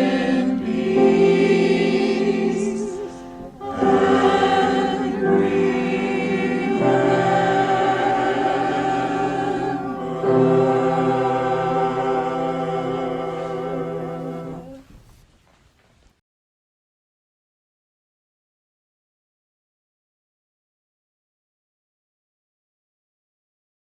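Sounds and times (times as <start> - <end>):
choir singing in harmony: 0.0 - 14.8.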